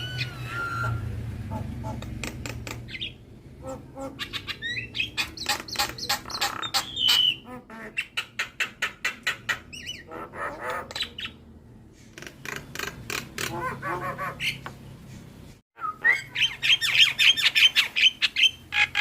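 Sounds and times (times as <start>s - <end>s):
bird singing: 0.0s - 11.5s, 15.8s - 19.0s.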